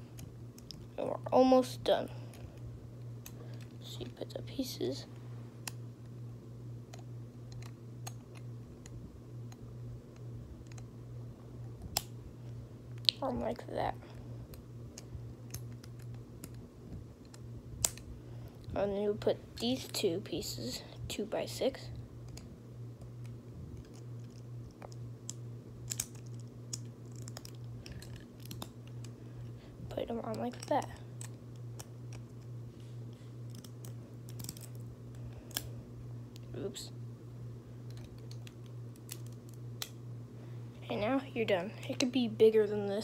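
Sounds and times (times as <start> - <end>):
low steady hum: 0.0 - 43.0.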